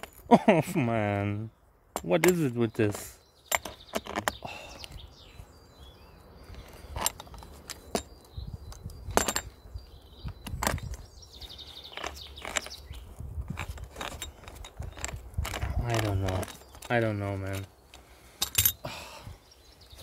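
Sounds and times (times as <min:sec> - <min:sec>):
birds chirping faintly: 0:00.0 - 0:20.0
metal parts clicking: 0:13.5 - 0:17.7, 0:18.4 - 0:18.8.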